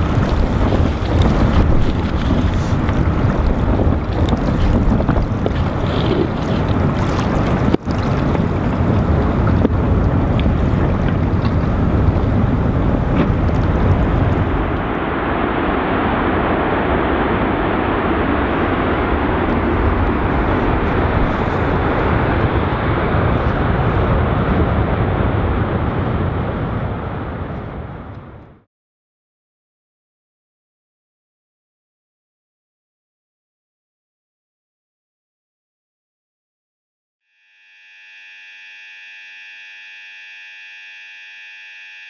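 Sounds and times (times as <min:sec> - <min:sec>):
loud rushing noise with deep rumble: 0:00.0 - 0:28.7.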